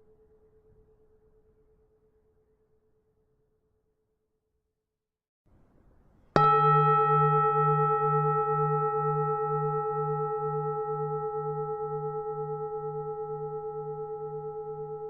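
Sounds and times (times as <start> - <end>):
temple bell ringing: 6.4 - 15.0.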